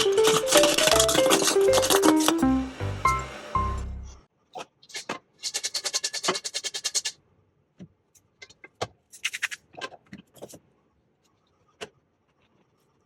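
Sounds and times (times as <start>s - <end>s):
small hard objects clicking: 0.0s - 2.4s.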